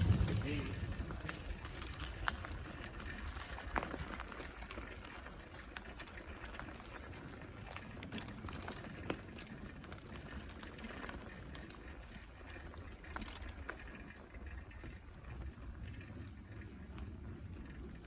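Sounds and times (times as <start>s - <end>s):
low rumble: 0.0s - 3.9s
bicycle tyres rolling on gravel: 0.0s - 18.0s.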